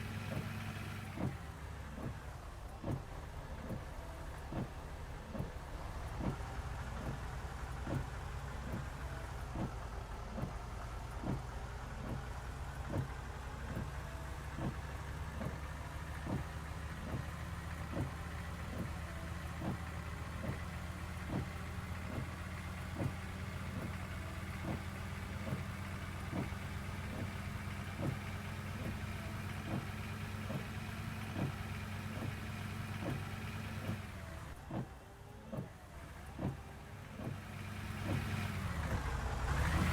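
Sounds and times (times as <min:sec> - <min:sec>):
bus engine idling: 0:00.0 - 0:39.9.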